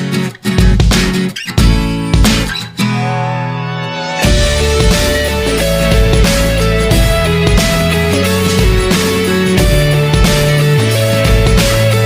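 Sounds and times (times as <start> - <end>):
guitar-led instrumental music: 0.0 - 12.0.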